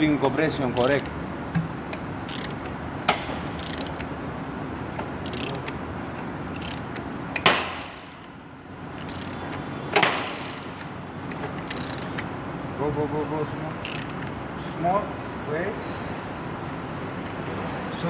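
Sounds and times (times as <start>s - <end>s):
ratcheting wrench clicks: 0.7s - 1.2s, 2.2s - 4.1s, 5.0s - 5.8s, 6.5s - 8.3s, 9.0s - 12.2s, 13.8s - 14.3s
sharp metallic knocks: 0.8s - 1.8s, 7.4s - 8.2s, 9.1s - 10.8s
engine turned over by hand: 4.9s - 8.2s, 9.0s - 12.2s.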